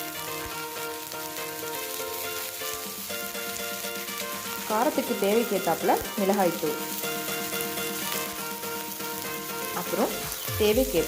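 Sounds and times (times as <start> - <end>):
background music with held notes: 0.0 - 11.0
vegetables sizzling in oil: 0.0 - 11.0.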